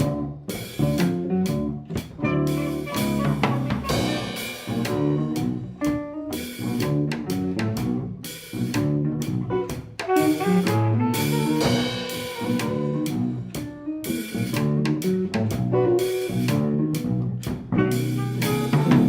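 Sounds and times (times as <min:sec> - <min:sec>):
jazz band playing: 0:00.0 - 0:19.0
drum hits: 0:00.8 - 0:08.0, 0:08.8 - 0:13.7, 0:17.5 - 0:19.0.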